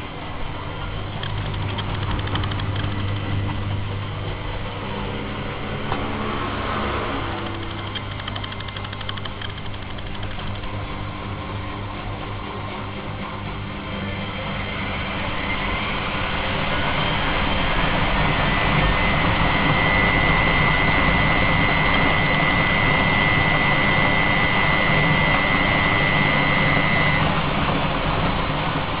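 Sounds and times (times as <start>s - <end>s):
high motor whine: 0.0s - 29.0s
washing machine whirring: 0.0s - 29.0s.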